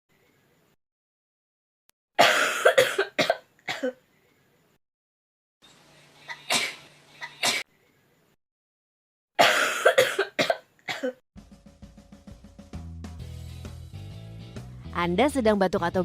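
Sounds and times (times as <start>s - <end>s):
person coughing: 2.2s - 4.0s, 6.3s - 7.6s, 9.4s - 11.2s
background music: 11.4s - 16.0s.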